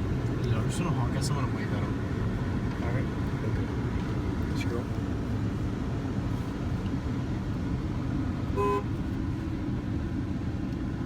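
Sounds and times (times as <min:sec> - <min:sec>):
low rumble of moving car: 0:00.0 - 0:11.0
car horn toot: 0:08.6 - 0:08.9.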